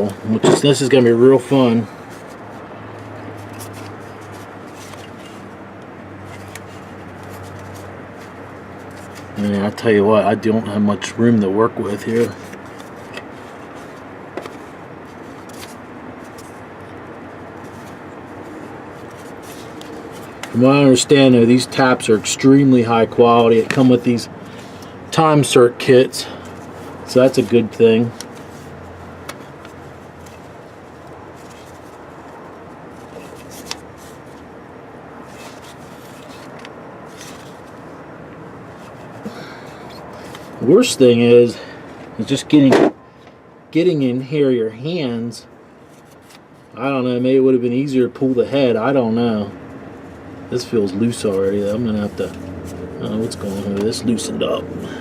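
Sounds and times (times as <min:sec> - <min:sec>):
hand tools scraping: 0:00.0 - 0:02.5
steady background noise: 0:00.0 - 0:55.0
steady low hiss: 0:00.0 - 0:55.0.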